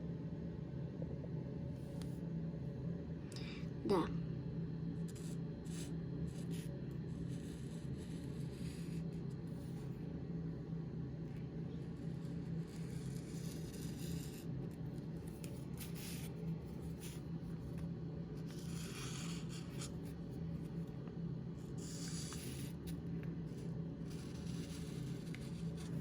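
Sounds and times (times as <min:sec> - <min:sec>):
steady low hum: 0:00.0 - 0:26.0
marker rubbing across paper: 0:07.3 - 0:09.1, 0:12.0 - 0:14.5, 0:18.4 - 0:20.2, 0:21.6 - 0:26.0.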